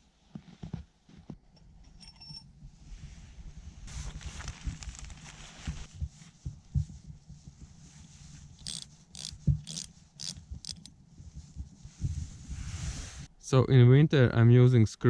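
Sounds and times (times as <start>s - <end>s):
wrench rasping scrapes: 8.6s - 10.9s.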